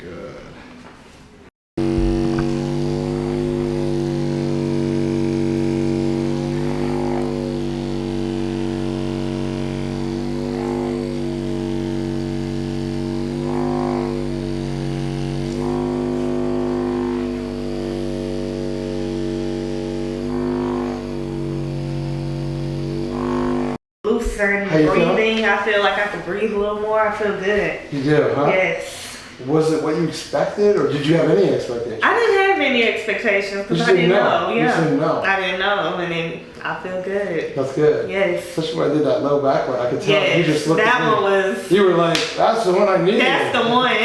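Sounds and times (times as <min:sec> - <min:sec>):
droning chord of low tones: 0:01.8 - 0:23.8.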